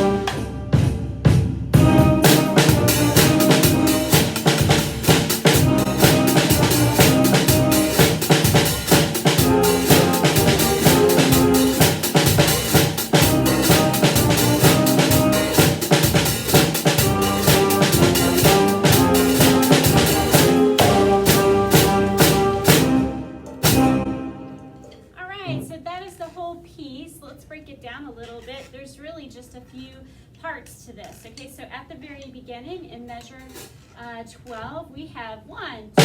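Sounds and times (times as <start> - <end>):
recorded band accompaniment: 0.0 - 24.9
drum kit playing: 0.0 - 25.7.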